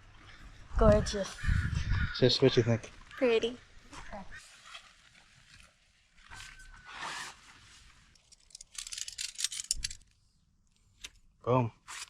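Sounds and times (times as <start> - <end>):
scraping and rustling: 4.4 - 10.1.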